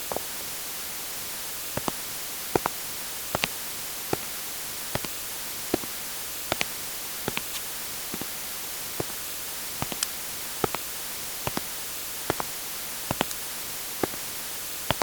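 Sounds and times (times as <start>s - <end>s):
steady hiss: 0.0s - 15.0s
footsteps on hard surface: 2.6s - 4.3s, 4.9s - 9.2s, 9.8s - 13.4s, 14.0s - 14.2s.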